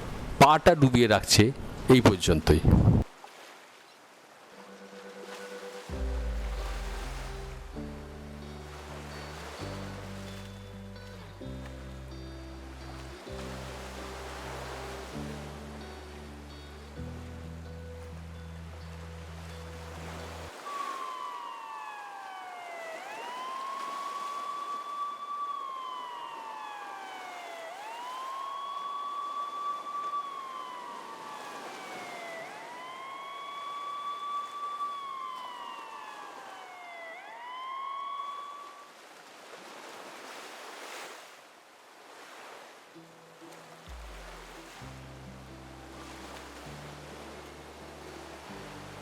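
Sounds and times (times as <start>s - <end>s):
emergency siren wailing: 4.6s - 8.1s, 19.9s - 39.0s.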